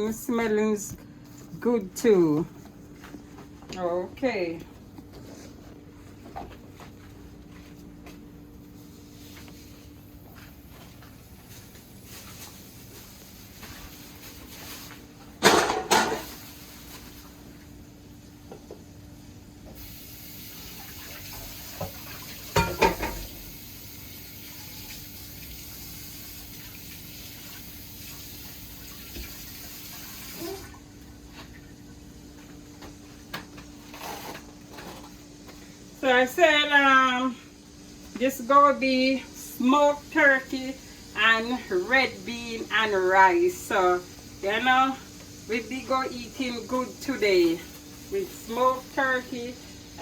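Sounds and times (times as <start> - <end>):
tap running into a sink: 20.9 - 23.4, 28.9 - 30.6.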